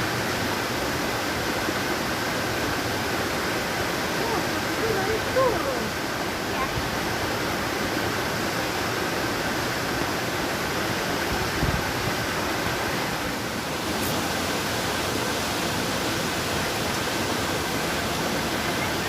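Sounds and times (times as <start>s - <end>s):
waterfall roaring: 0.0s - 19.0s.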